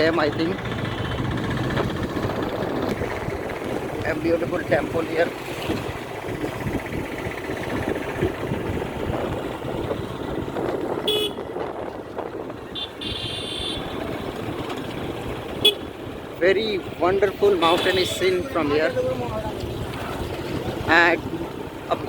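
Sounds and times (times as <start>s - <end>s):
vehicle rumbling on road: 0.0s - 22.0s
wind on microphone: 1.2s - 4.5s, 5.6s - 13.0s.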